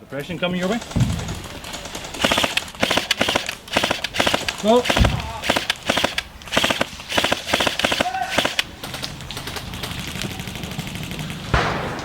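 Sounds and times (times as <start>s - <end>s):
airsoft guns rapid firing: 0.6s - 12.0s.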